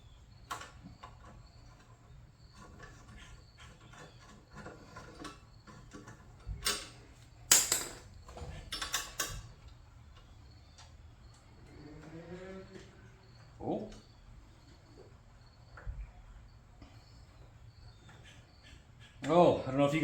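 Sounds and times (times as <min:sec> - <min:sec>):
hand tools clicking on metal: 0:02.6 - 0:08.1.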